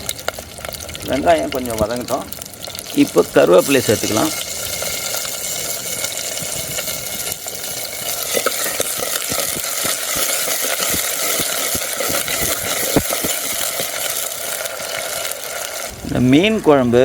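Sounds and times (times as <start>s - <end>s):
food frying in hot oil: 0.0s - 16.9s
oil popping and crackling: 0.0s - 17.0s.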